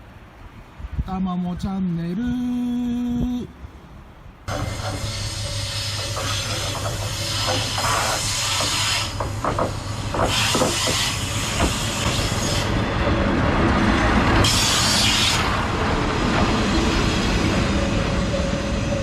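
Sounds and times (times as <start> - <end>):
diesel railcar engine drone: 2.4 - 19.0
air hiss bursts: 4.5 - 12.7, 14.4 - 15.6.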